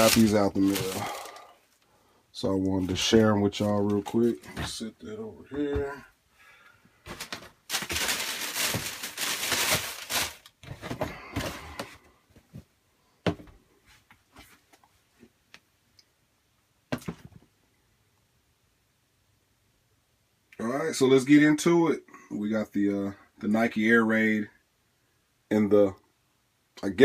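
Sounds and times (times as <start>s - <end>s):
packaging rustling and crinkling: 0.0s - 1.6s, 7.0s - 12.0s.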